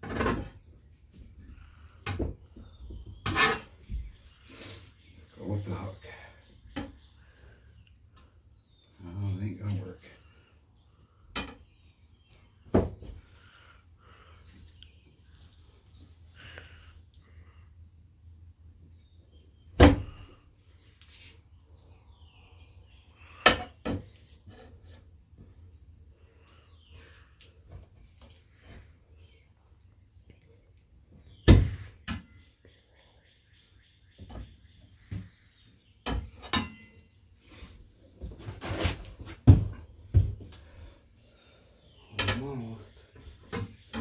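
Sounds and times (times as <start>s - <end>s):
tools scraping on wheel rim: 0.0s - 0.7s, 3.2s - 3.9s.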